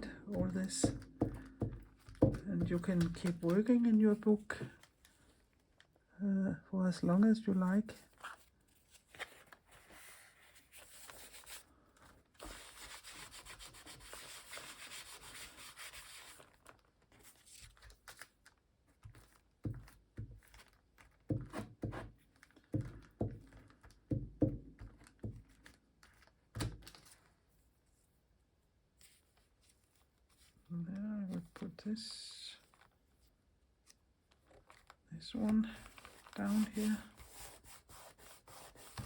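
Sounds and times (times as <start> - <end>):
paper handling: 0.4 - 5.9, 8.0 - 27.5, 33.8 - 39.0
paper being rubbed: 12.4 - 16.5, 36.4 - 39.0.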